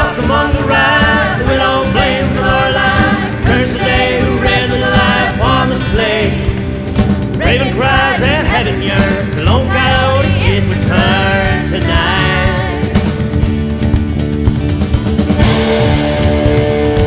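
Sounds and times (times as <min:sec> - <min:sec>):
person singing: 0:00.0 - 0:06.6, 0:07.4 - 0:13.2
country song: 0:00.0 - 0:17.0.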